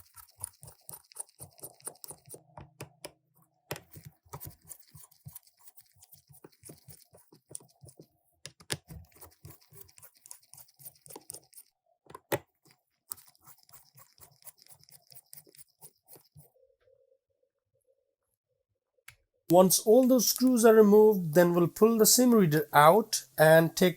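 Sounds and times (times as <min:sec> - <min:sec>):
screwdriver clicking and scratching: 0:00.0 - 0:03.1, 0:03.7 - 0:16.5.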